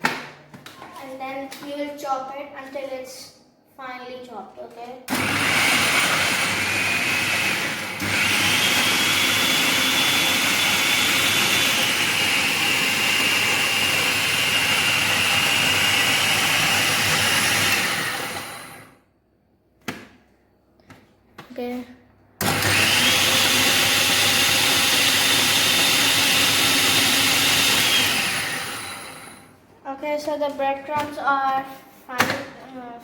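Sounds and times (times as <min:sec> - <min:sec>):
electric food chopper motor whining: 0:05.1 - 0:19.0, 0:22.4 - 0:29.5.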